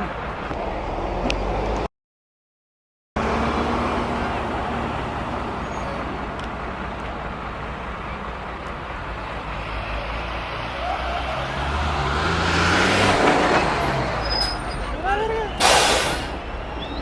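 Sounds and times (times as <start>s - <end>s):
street traffic: 0.0s - 1.9s, 3.2s - 17.0s
vehicle engine passing close: 9.1s - 14.3s.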